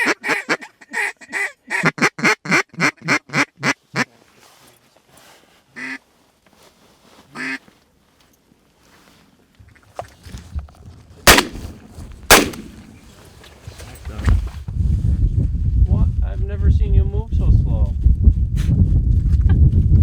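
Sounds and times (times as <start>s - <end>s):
duck call quacks: 0.0s - 4.1s, 5.8s - 6.0s, 7.4s - 7.6s.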